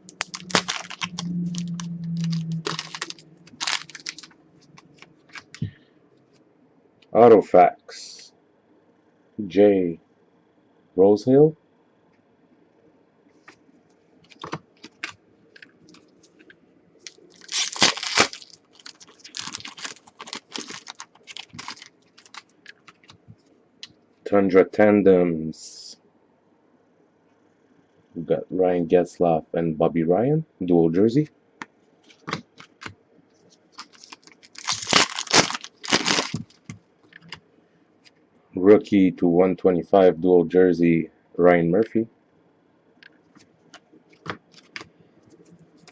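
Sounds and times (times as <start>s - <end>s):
card wrapper crinkling: 0.0s - 5.6s, 14.3s - 16.1s, 17.0s - 23.3s, 32.1s - 32.9s, 33.7s - 37.4s, 44.2s - 44.9s
wrapper ripping: 0.0s - 5.6s, 14.3s - 15.2s, 17.1s - 23.2s, 33.8s - 36.8s, 44.5s - 44.8s
cards being handled: 0.0s - 5.7s, 14.3s - 16.5s, 17.1s - 23.3s, 32.1s - 32.9s, 33.5s - 37.4s, 44.2s - 45.9s.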